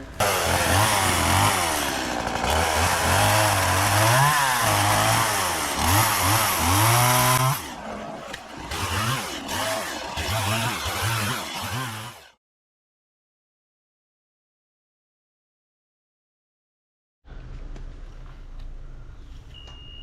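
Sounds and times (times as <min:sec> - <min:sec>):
chainsaw cutting wood: 0:00.2 - 0:12.4.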